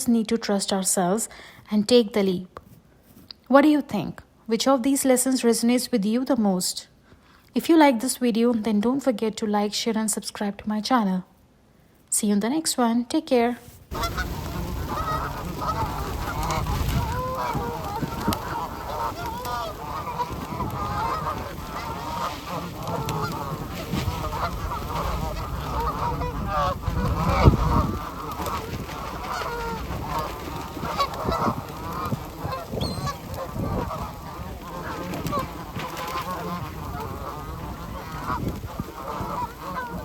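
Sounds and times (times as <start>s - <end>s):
geese honking: 13.9s - 40.0s.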